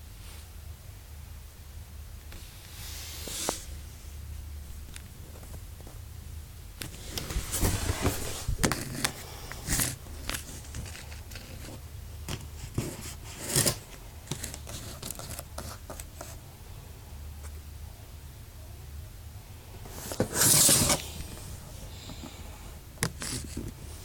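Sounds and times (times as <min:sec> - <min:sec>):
low steady hum: 0:00.0 - 0:24.0
handling clicks and scrapes: 0:06.8 - 0:16.4, 0:19.8 - 0:22.4, 0:23.0 - 0:24.0.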